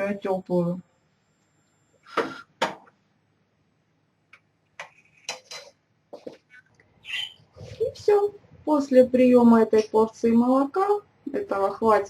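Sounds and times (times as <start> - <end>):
kitchenware clicking and clinking: 5.0 - 6.4.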